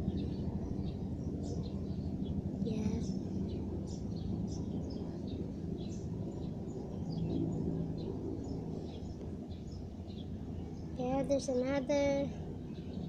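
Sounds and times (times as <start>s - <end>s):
distant helicopters droning: 0.0s - 13.0s
small birds chirping: 0.0s - 13.0s.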